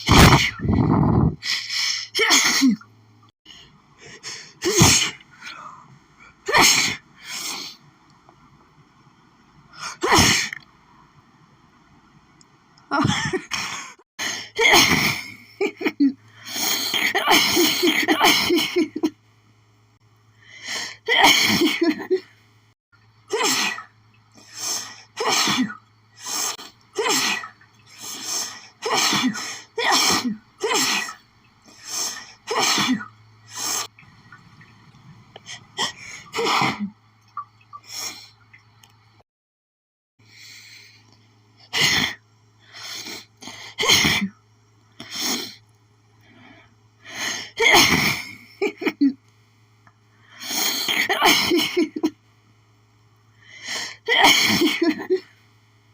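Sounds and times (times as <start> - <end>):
woman sneezing: 0.0 - 0.6.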